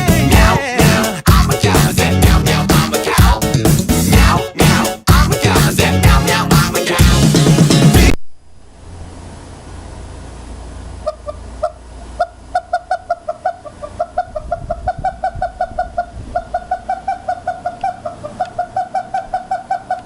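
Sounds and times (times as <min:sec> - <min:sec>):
low hum: 0:08.0 - 0:19.4
animal making short pitched calls: 0:11.0 - 0:20.0.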